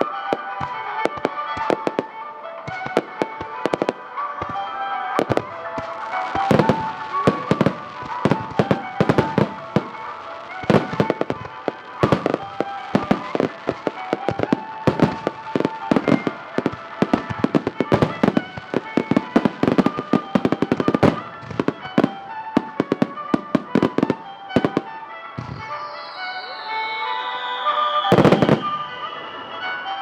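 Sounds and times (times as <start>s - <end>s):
firework bursts: 0.0s - 30.0s
music playing: 0.0s - 30.0s.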